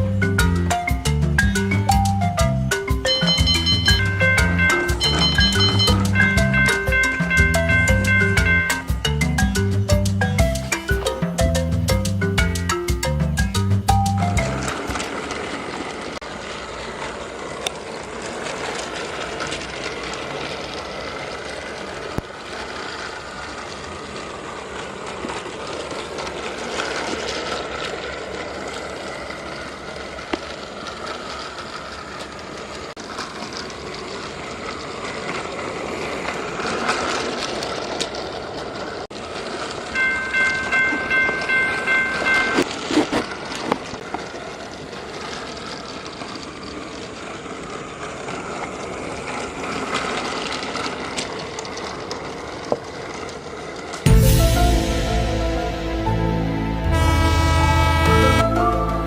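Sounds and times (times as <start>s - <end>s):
toy train whirring on track: 2.8s - 13.9s, 14.7s - 54.0s
electronic horn beeps: 3.1s - 8.9s, 56.5s - 59.0s.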